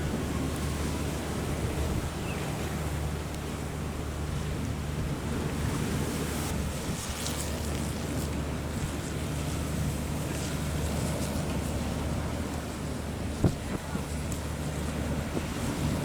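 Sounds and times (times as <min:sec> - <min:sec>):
wind buffeting microphone: 0:00.0 - 0:07.5.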